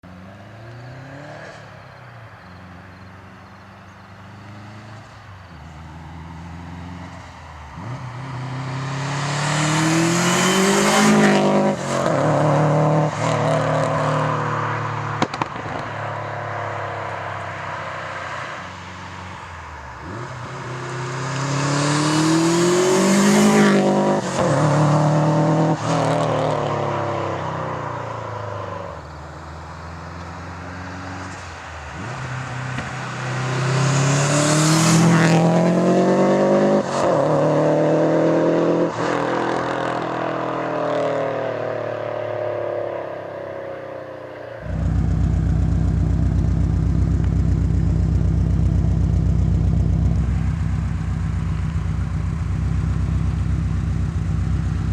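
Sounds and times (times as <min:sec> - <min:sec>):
car accelerating past: 0:00.1 - 0:54.9
sharp crack: 0:15.2 - 0:15.9.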